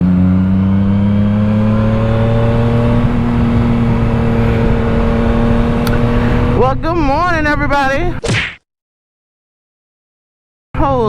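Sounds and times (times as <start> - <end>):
motorcycle engine running: 0.0 - 8.1.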